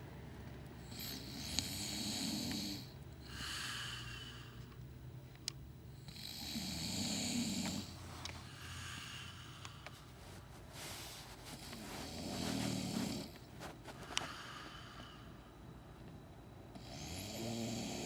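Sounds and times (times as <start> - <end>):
man snoring: 0.9 - 4.5, 6.1 - 7.9, 16.8 - 18.0.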